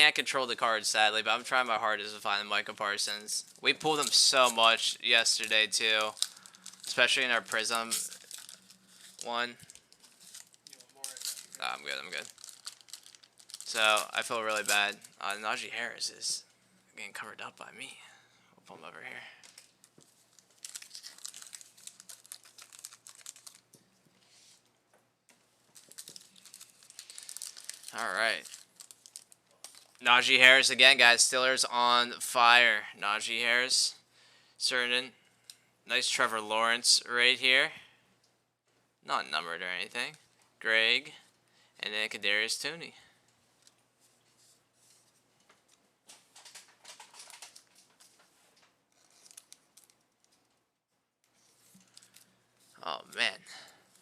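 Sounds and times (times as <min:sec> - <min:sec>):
cards clicking and wrapper crinkling: 0:02.6 - 0:15.3, 0:19.4 - 0:23.9, 0:25.7 - 0:30.0, 0:45.5 - 0:50.5, 0:51.3 - 0:52.3.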